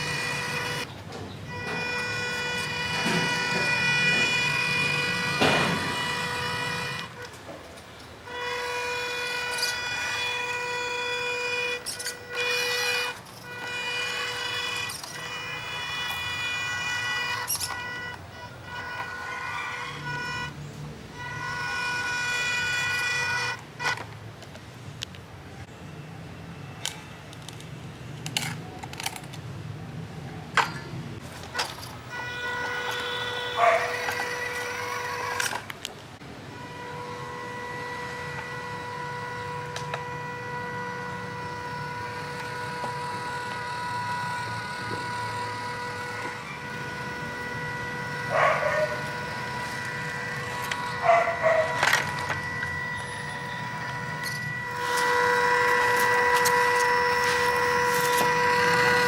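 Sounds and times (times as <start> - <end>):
sharp clicks and knocks: 0.0 - 8.1
toy car motor whining: 0.0 - 25.2, 26.8 - 29.4, 30.3 - 59.0.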